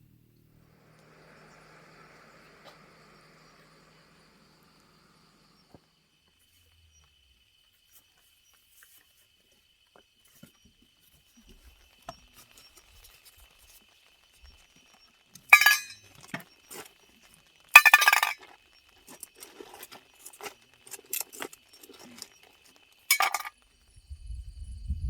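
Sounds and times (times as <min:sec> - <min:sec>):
hard objects clinking: 0:15.5 - 0:16.9, 0:17.8 - 0:23.6.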